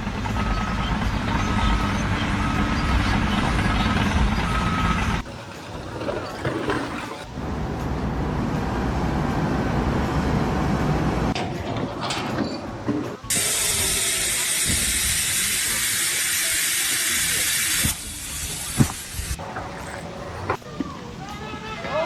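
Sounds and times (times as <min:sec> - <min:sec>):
low mechanical rumble: 0:00.0 - 0:05.3, 0:07.2 - 0:11.4
loud steady hiss: 0:13.3 - 0:19.5.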